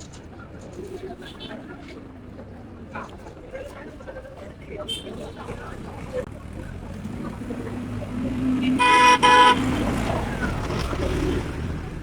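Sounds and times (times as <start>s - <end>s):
motor vehicle rumble: 0.0s - 12.0s
vehicle horn toots: 8.7s - 9.7s.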